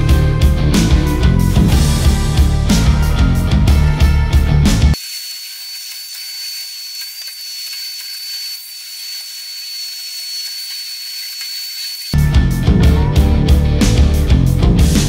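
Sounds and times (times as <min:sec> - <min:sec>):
thin high whine: 0:05.0 - 0:12.2.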